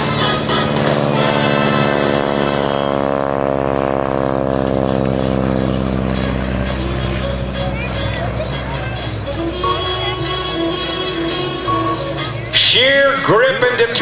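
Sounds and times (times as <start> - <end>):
biplane engine flying past: 0.0 - 14.0
faint music: 5.2 - 14.0.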